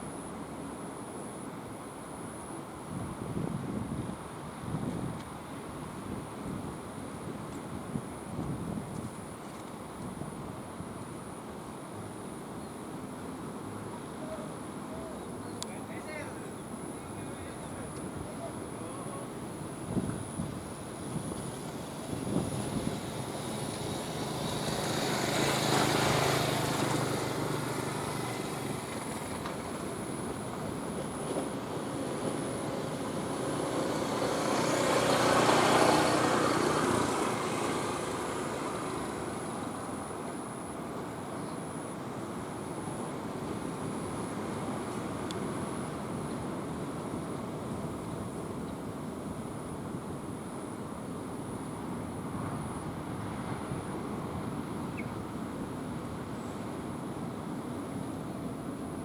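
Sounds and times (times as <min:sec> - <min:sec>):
traffic hum: 0:14.9 - 0:50.0
vehicles passing: 0:21.4 - 0:43.1.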